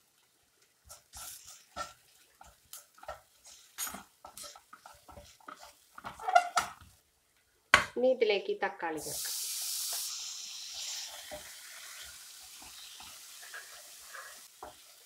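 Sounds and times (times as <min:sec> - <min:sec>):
spoon scraping a frying pan: 0:00.9 - 0:06.9, 0:10.8 - 0:14.9.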